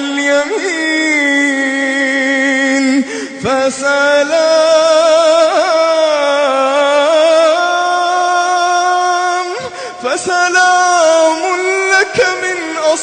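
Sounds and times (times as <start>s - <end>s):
man reciting melodically: 0.0s - 13.0s.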